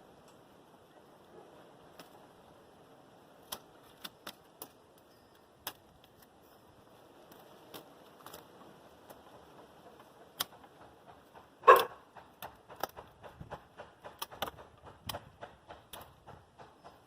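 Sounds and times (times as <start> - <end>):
pruning shears snipping: 3.4 - 6.4, 7.2 - 16.8.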